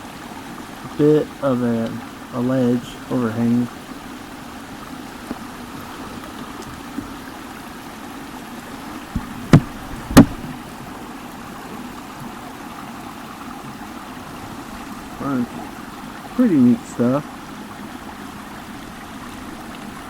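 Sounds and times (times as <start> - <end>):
small waterfall splashing: 0.0 - 20.0
sharp knocks: 9.2 - 10.5.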